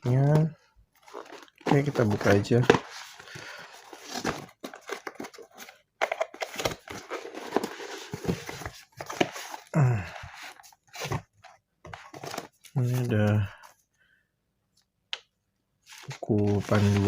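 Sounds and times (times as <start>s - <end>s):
packaging rustling and tearing: 1.0s - 9.8s, 16.0s - 17.0s.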